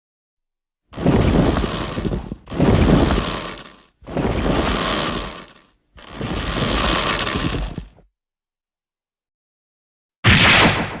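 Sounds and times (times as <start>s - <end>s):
rough monster roars: 1.0s - 8.0s.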